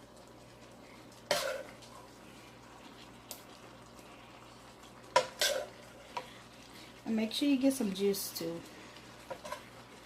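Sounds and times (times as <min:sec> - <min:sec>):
utensil scraping cookware: 0:01.3 - 0:01.8, 0:05.2 - 0:05.8, 0:09.3 - 0:09.7.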